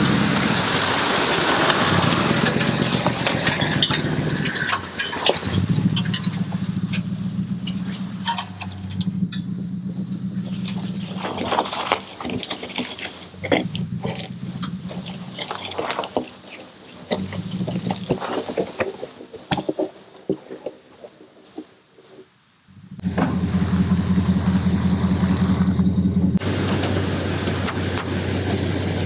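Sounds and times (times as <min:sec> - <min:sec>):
small engine running: 0:00.0 - 0:18.2, 0:22.7 - 0:29.0.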